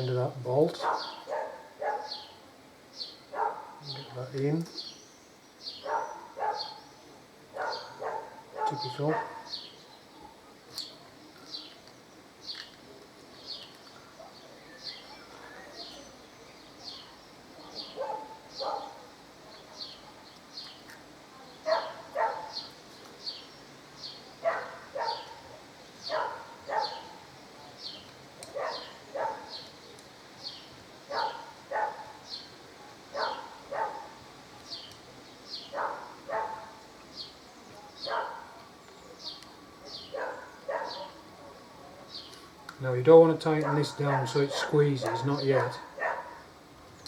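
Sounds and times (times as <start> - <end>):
bird chirping: 0.0 - 47.0
dog barking: 0.8 - 2.4, 3.3 - 4.0, 5.8 - 6.9, 7.5 - 9.6, 17.7 - 19.1, 21.6 - 22.7, 24.4 - 27.3, 28.5 - 29.6, 31.1 - 32.3, 33.1 - 34.2, 35.7 - 36.8, 38.0 - 38.6, 40.0 - 41.6, 43.6 - 46.5.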